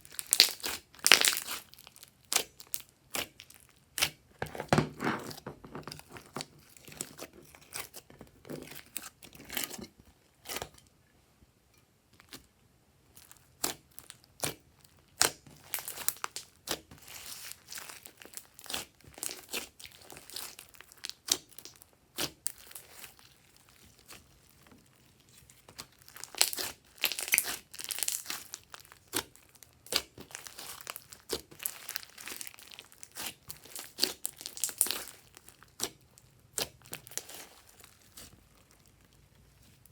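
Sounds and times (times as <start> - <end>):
slime crackling and popping: 0.0 - 4.2, 13.2 - 39.9.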